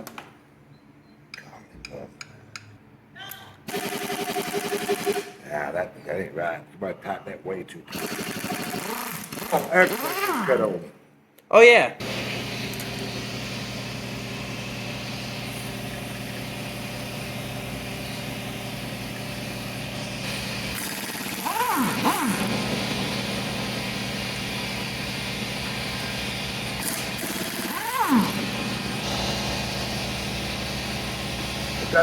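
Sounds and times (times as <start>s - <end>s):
steady mechanical hum: 0.0s - 32.0s.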